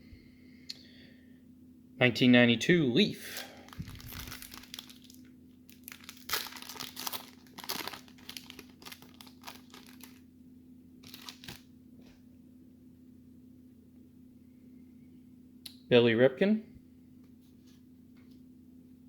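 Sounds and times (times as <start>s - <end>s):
faint steady hum: 0.0s - 19.0s
paper and foil wrapper crinkling: 3.3s - 10.2s, 11.0s - 11.7s.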